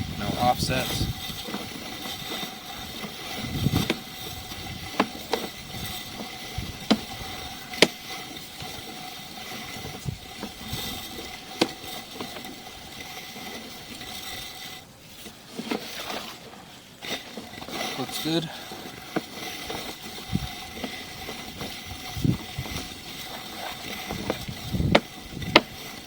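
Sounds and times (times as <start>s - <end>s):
sharp clicks and knocks: 9.7s - 14.1s.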